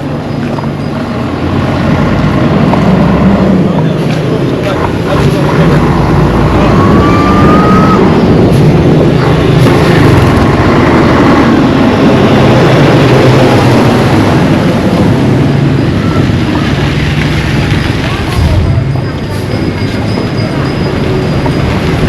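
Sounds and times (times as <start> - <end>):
street traffic: 0.0 - 22.0
vehicle engine running close by: 0.0 - 22.0
short high rising tone: 6.4 - 8.5.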